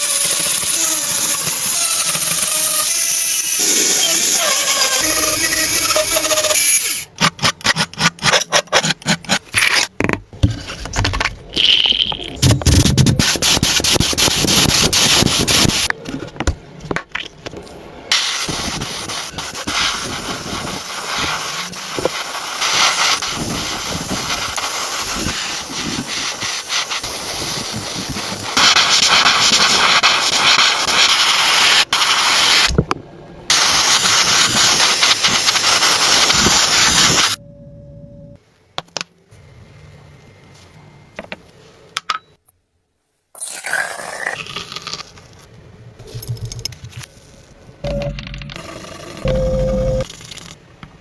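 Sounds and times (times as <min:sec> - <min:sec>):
high-pressure spray hissing: 0:00.0 - 0:07.1, 0:18.1 - 0:32.7, 0:33.5 - 0:37.4.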